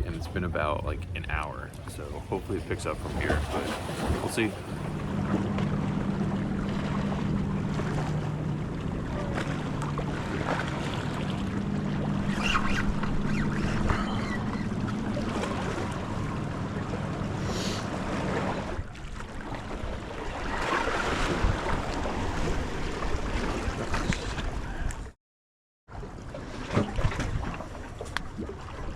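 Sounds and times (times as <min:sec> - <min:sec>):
boat engine droning: 0:00.0 - 0:25.0
waves at water's edge: 0:00.0 - 0:25.2, 0:25.9 - 0:28.9
wind: 0:00.0 - 0:25.2, 0:25.9 - 0:28.9.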